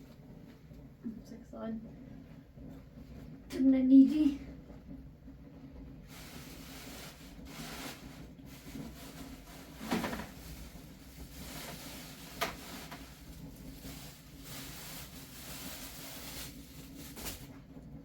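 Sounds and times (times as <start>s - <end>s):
rain falling: 5.8s - 17.8s.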